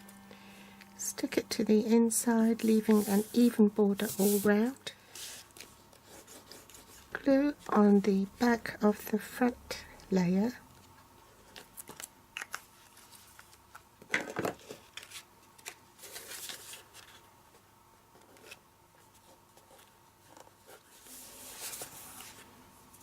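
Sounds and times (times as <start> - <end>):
paper rustling and sliding: 2.6 - 7.1, 14.6 - 17.2, 19.6 - 23.0.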